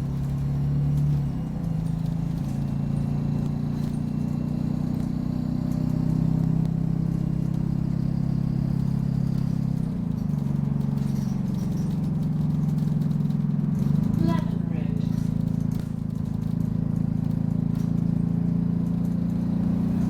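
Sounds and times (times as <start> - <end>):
bus diesel engine droning: 0.0 - 20.0.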